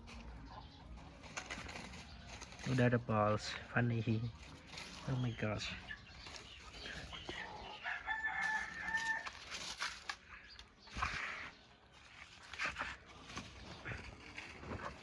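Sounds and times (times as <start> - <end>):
rustles and knocks: 0.0 - 3.5
rooster crowing: 7.8 - 9.4.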